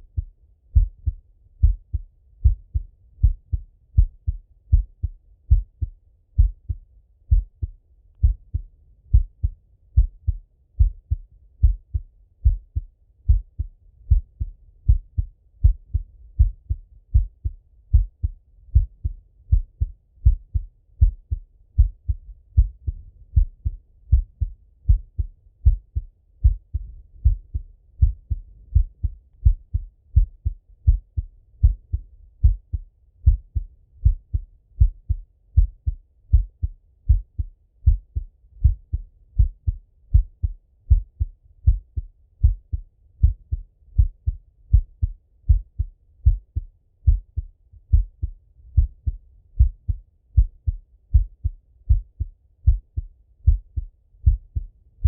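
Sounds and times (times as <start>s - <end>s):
heartbeat thumps: 0.0s - 54.7s.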